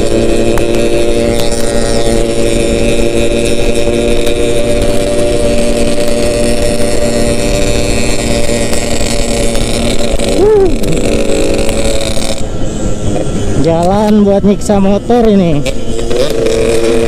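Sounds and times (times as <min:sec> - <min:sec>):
motorcycle engine running: 0:00.0 - 0:17.0
rising and falling tone: 0:10.0 - 0:12.4.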